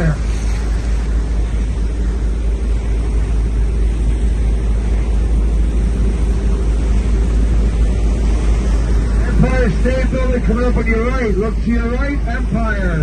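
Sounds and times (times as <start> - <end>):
boat engine rumbling: 0.0 - 13.0
faint steady hum: 0.0 - 13.0.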